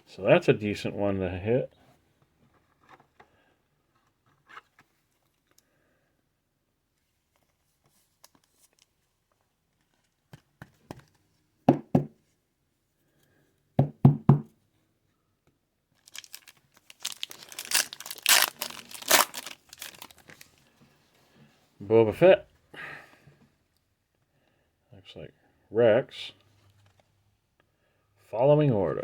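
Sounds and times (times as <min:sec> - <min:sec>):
sharp knocks: 0:13.8 - 0:14.5
foil wrapper tearing and crinkling: 0:16.0 - 0:20.5.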